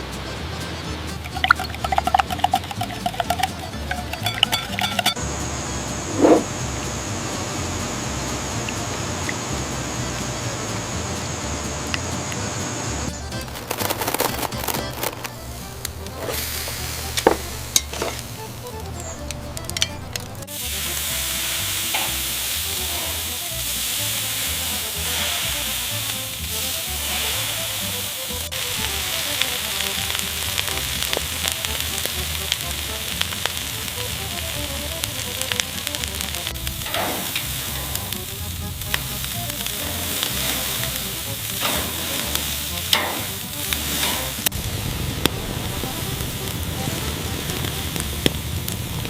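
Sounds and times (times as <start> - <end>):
background music: 0.0 - 49.0
grill crackles: 0.0 - 49.0
food sizzling on a grill: 0.1 - 49.0.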